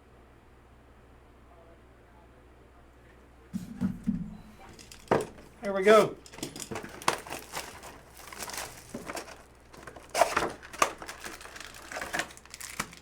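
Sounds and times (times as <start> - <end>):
foil wrappers crinkling and tearing: 4.7 - 13.0.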